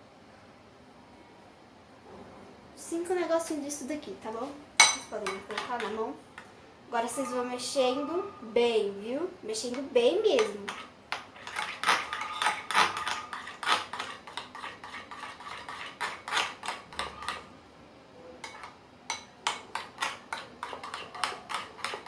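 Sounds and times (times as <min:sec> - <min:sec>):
spoon scraping a container: 0:10.4 - 0:17.5, 0:19.7 - 0:22.0.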